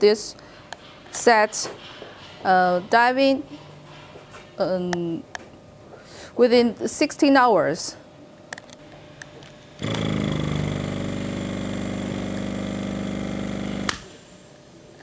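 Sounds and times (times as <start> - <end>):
air compressor running: 9.8 - 14.5.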